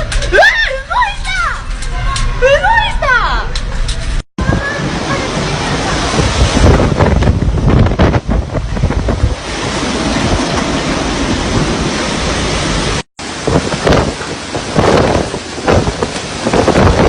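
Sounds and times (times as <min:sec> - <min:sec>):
strong wind buffeting microphone: 0:04.4 - 0:17.0.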